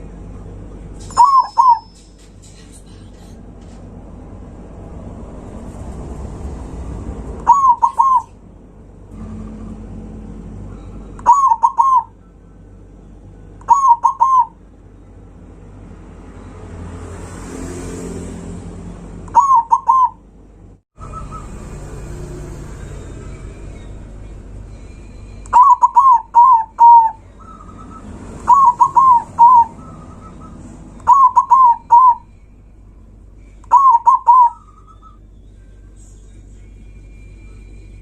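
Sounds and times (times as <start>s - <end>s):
dove cooing: 1.2s - 1.8s, 7.4s - 8.4s, 11.2s - 12.2s, 13.7s - 14.6s, 19.3s - 20.2s, 25.5s - 32.2s, 33.7s - 34.8s.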